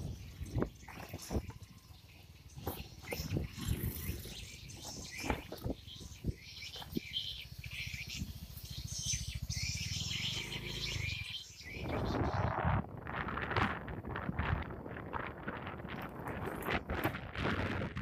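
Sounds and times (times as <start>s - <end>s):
birds chirping: 0.0s - 13.0s.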